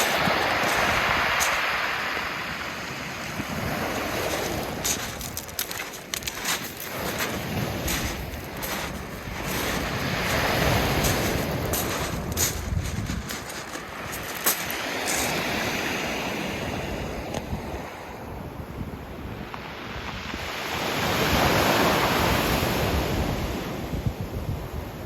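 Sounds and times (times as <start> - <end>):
wind buffeting microphone: 0.0 - 15.8
waves washing up pebble beach: 0.0 - 17.9, 20.0 - 23.8.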